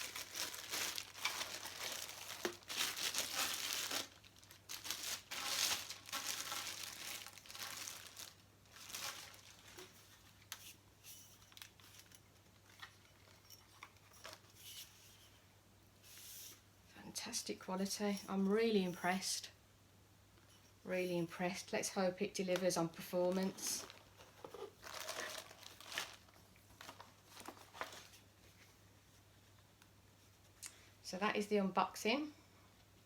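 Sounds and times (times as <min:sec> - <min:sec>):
packaging crinkling and rustling: 0:00.0 - 0:15.1, 0:22.6 - 0:28.2.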